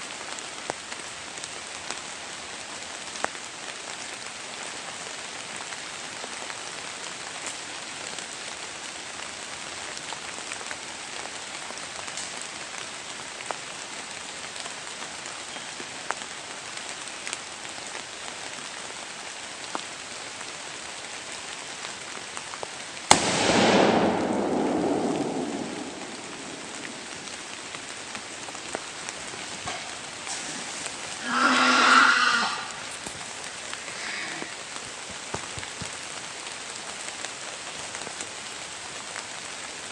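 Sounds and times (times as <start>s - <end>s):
rain hiss: 0.0s - 39.9s
gunshot: 23.1s - 27.5s.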